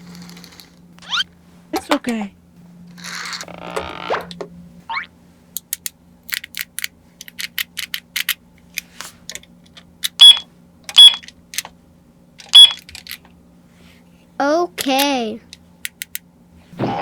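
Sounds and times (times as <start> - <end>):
rising squeak: 1.0 - 1.3
plastic toy pieces clicking: 5.6 - 8.4.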